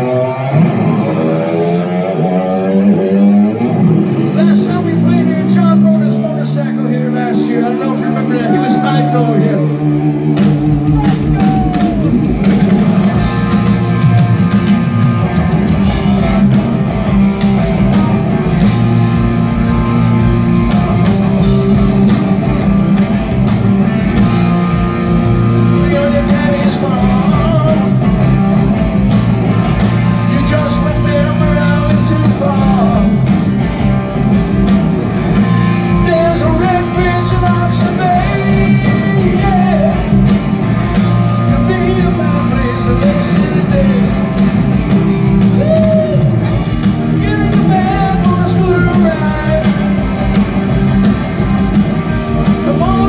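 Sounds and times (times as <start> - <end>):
live rock band playing: 0.0 - 53.0
man singing: 4.3 - 13.0, 25.6 - 28.3, 29.5 - 33.3, 35.9 - 40.4, 41.2 - 44.6, 47.1 - 50.4, 52.4 - 53.0.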